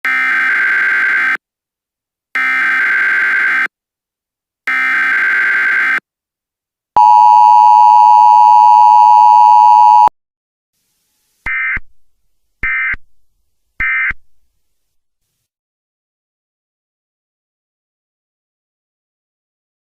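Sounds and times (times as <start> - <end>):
two-tone attention signal: 7.0 - 10.1.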